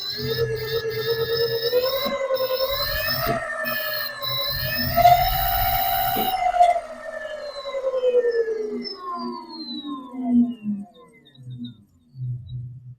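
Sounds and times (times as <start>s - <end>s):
electric scooter motor whining: 0.0s - 8.7s.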